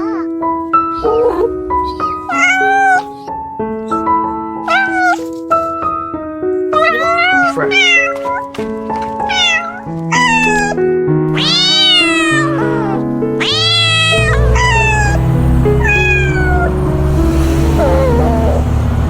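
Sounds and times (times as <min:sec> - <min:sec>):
cat meowing: 0:00.0 - 0:05.8, 0:06.7 - 0:16.8, 0:17.6 - 0:18.6
background music: 0:00.0 - 0:19.0
heavy bass line: 0:14.1 - 0:19.0.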